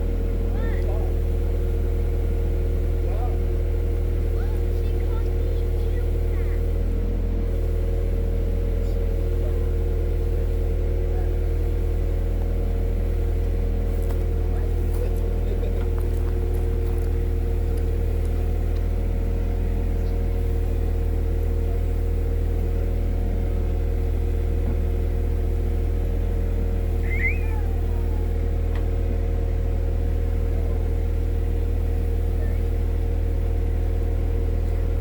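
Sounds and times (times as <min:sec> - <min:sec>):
excavator diesel engine running: 0:00.0 - 0:35.0
faint chirp: 0:27.0 - 0:27.9.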